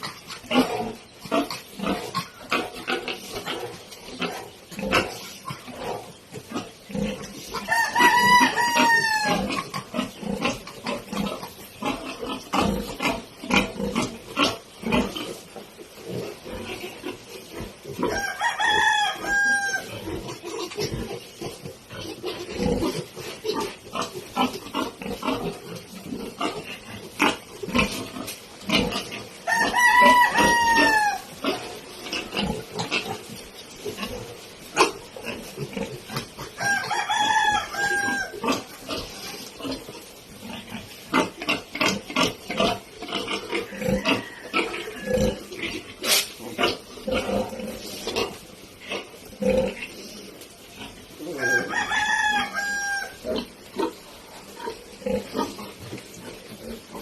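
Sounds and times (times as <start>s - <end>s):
rooster crowing: 7.6s - 9.6s, 18.0s - 20.0s, 29.4s - 31.3s, 36.6s - 38.5s, 43.6s - 45.5s, 51.3s - 53.4s
piglets grunting: 40.4s - 50.0s, 54.6s - 55.8s.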